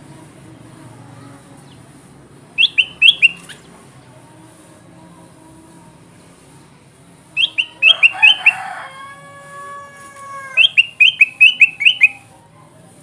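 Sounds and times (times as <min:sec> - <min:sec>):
bird long level call: 0:02.6 - 0:03.6, 0:07.4 - 0:08.8, 0:10.3 - 0:12.3
bulbul chirping: 0:02.6 - 0:03.7, 0:07.4 - 0:08.5, 0:10.6 - 0:12.3.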